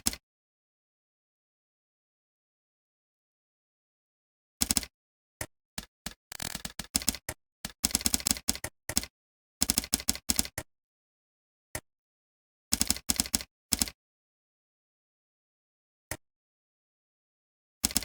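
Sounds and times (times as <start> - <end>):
computer keyboard typing: 6.3 - 9.1.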